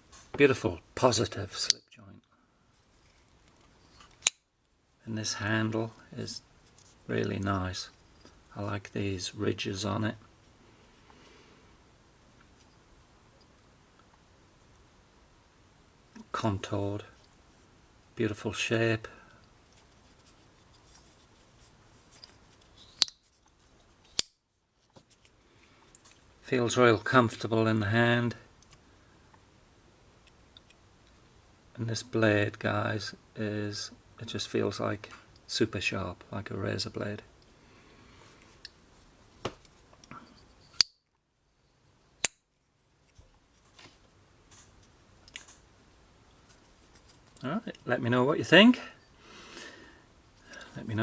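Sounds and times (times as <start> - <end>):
pocket knife blade clicking: 40.8 - 41.0.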